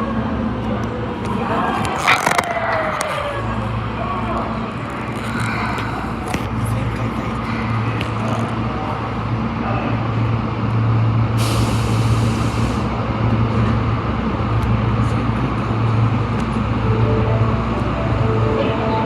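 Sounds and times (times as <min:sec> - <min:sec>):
subway car rumbling: 0:00.0 - 0:19.0
air hiss: 0:11.4 - 0:12.9.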